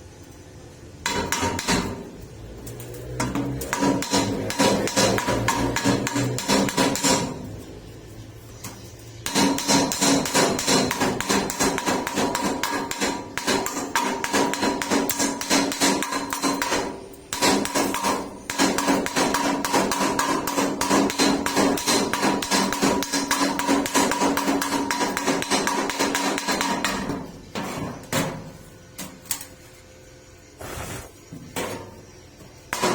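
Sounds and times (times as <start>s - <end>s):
hammer tapping steel pipe: 3.2s - 7.4s, 9.3s - 27.1s.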